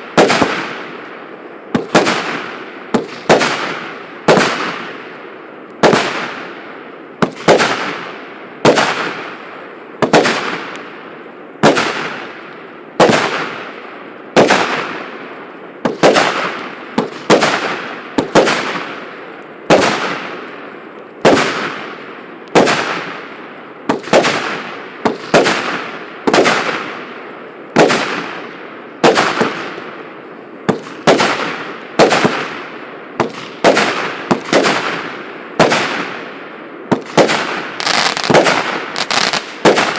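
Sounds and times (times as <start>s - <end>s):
firework shots banging: 0.0s - 1.1s, 1.7s - 5.1s, 5.8s - 6.6s, 7.2s - 9.4s, 10.0s - 10.9s, 11.6s - 12.4s, 13.0s - 13.8s, 14.4s - 15.2s, 15.8s - 19.1s, 19.7s - 20.6s, 21.2s - 23.3s, 23.9s - 27.1s, 27.8s - 29.9s, 30.6s - 36.3s, 36.9s - 39.9s.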